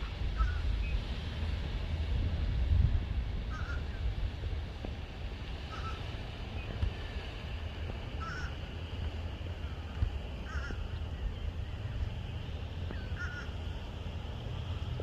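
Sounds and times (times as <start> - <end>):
low wind rumble: 0.0 - 15.0
bird calls: 5.7 - 6.0, 8.2 - 8.6, 9.6 - 12.1, 12.8 - 13.6.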